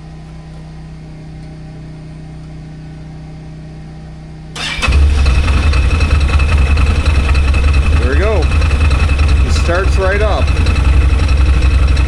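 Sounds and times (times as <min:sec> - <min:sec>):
steady low hum: 0:00.0 - 0:12.0
atv engine starting and running: 0:04.6 - 0:12.0.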